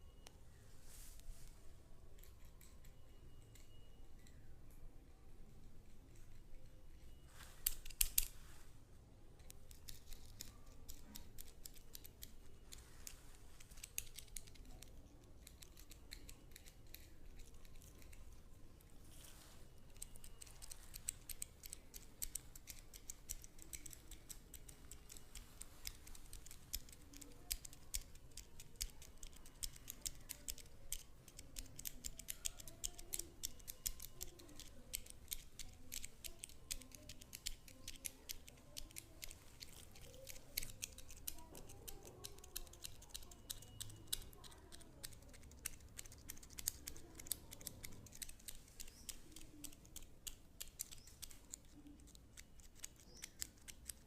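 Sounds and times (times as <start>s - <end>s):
faint music: 0.0s - 54.0s.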